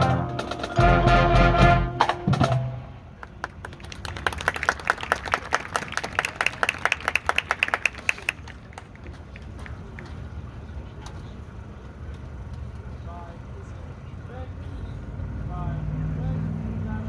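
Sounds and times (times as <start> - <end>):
marching band wind chords: 0.0 - 8.6.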